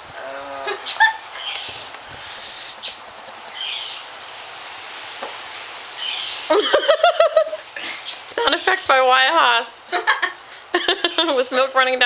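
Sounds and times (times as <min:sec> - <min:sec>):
boy gagging and hissing: 0:00.0 - 0:01.4.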